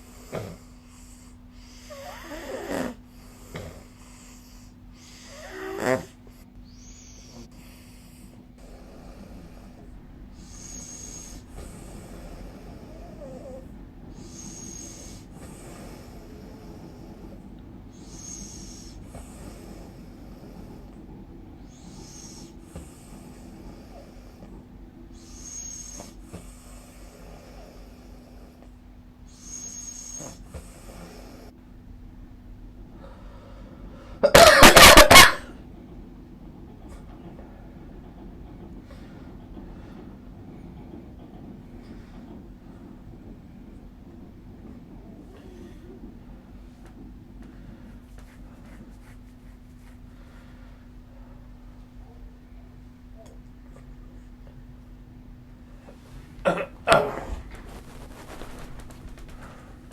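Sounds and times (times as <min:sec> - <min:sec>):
person snoring softly: 0:00.0 - 0:21.0, 0:21.6 - 0:31.6
juddering breath noise: 0:00.0 - 0:31.6, 0:55.6 - 0:59.9
faint steady hum: 0:00.0 - 0:59.9.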